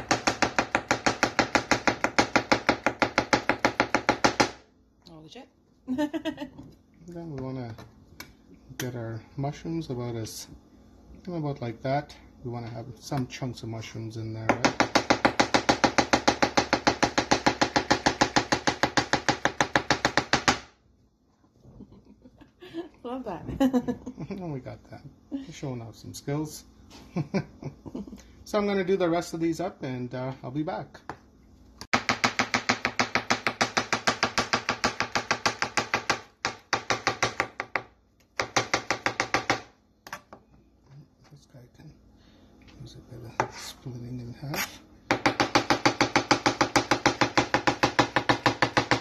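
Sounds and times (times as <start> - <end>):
knife chopping on a cutting board: 0.0 - 4.6, 14.4 - 20.7, 31.9 - 40.4, 44.6 - 49.0.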